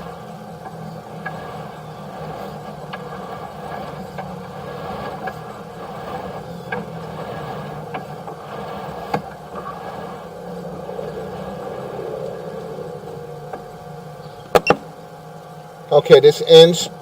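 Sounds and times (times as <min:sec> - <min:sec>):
motor humming: 0:00.0 - 0:16.0.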